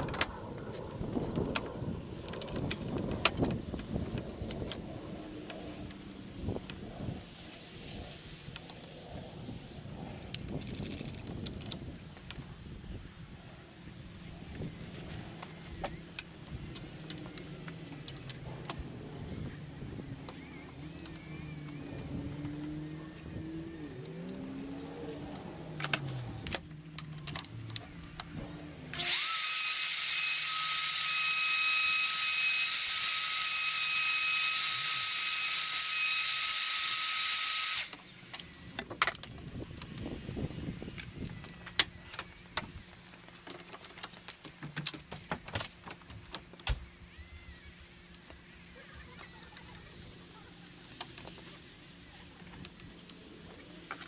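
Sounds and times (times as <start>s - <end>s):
wood router whining: 14.5s - 38.8s
handling clicks and knocks: 41.0s - 46.9s.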